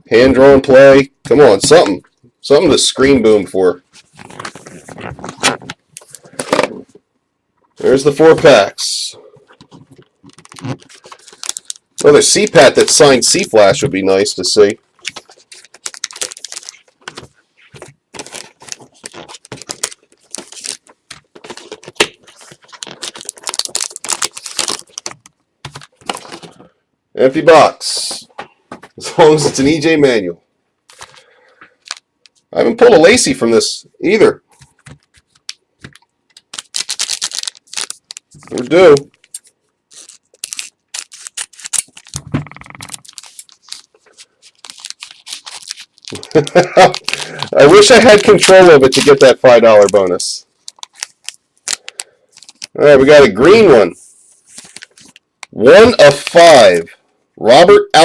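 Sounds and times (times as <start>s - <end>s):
foil wrappers crinkling: 9.6s - 13.6s, 14.5s - 26.6s, 30.9s - 32.1s, 34.6s - 52.8s, 54.5s - 55.3s.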